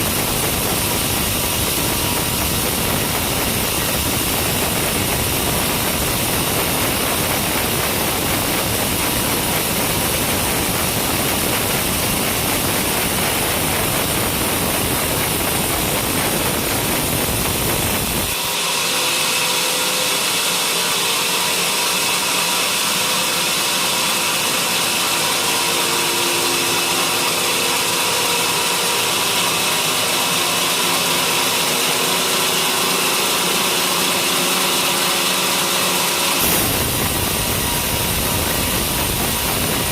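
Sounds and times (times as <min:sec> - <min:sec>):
sawmill sawing wood: 0:18.3 - 0:39.9.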